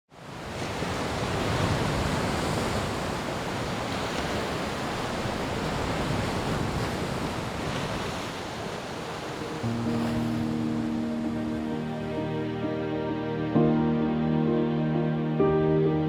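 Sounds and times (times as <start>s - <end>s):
sea waves breaking on shore: 0.1s - 13.8s.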